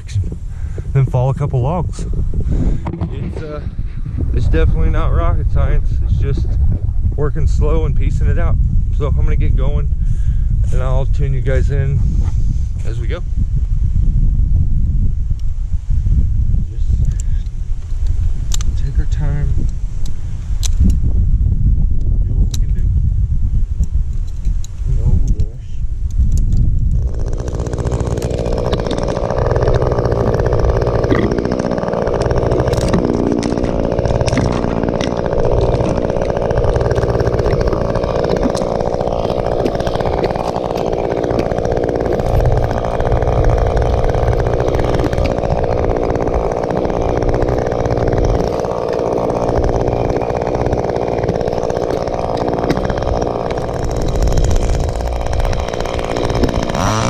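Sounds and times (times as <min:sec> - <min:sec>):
chainsaw engine running: 0:00.0 - 0:08.4, 0:26.8 - 0:57.0.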